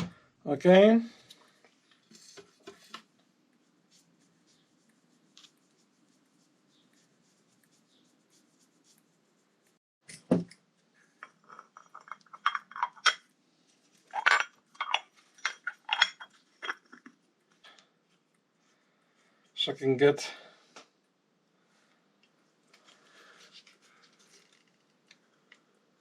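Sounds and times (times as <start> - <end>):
metal parts clinking: 14.1 - 17.0.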